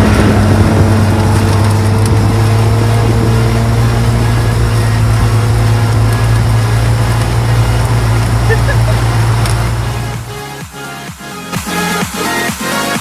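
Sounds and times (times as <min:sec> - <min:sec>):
vehicle engine droning: 0:00.0 - 0:12.8.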